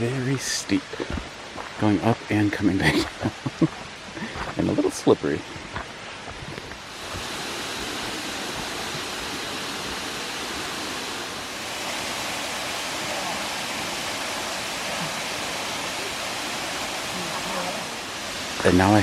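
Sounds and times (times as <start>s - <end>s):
waterfall pouring into pool: 6.8s - 19.0s.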